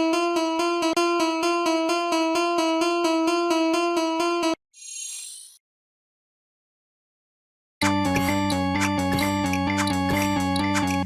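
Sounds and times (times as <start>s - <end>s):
high-pitched shimmering sound effect: 4.8s - 5.6s.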